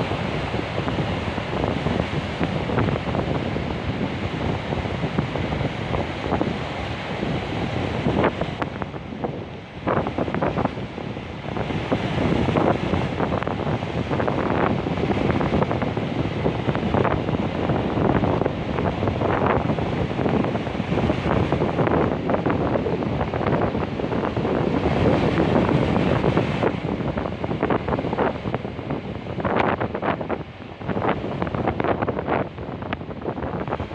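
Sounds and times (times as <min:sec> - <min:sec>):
wind buffeting microphone: 0:00.0 - 0:33.9.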